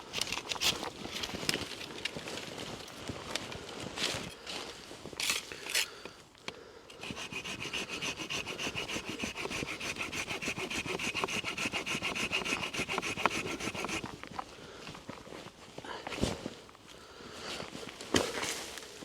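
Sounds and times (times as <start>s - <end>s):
hand saw cutting wood: 6.9s - 14.2s.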